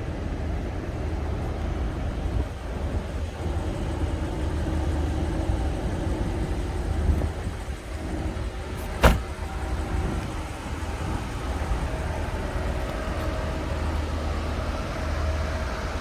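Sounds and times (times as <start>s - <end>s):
car engine idling: 0.2s - 16.0s
sharp exhaust crack: 8.8s - 9.5s.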